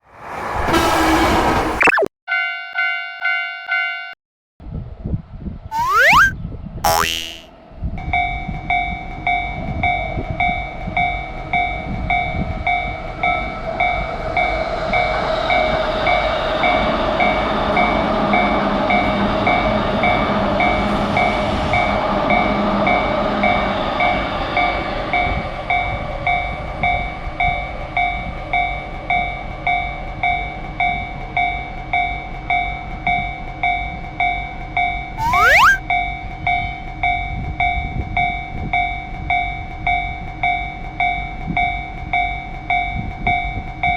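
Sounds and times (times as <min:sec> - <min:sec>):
train running past: 0:09.1 - 0:30.5.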